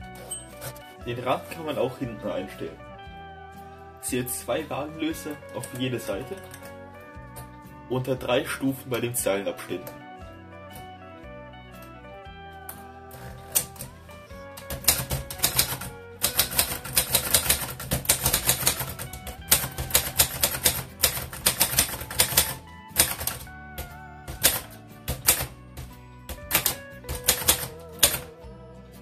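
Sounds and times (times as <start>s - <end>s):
background music: 0.0s - 29.0s
manual typewriter typing: 0.1s - 0.9s, 5.2s - 7.5s, 13.1s - 28.3s.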